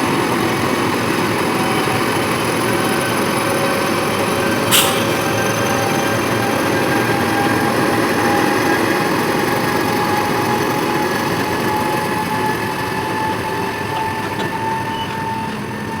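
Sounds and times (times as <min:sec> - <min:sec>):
locomotive whine rising: 0:02.0 - 0:16.0
train wheels rumbling on rail: 0:03.8 - 0:16.0.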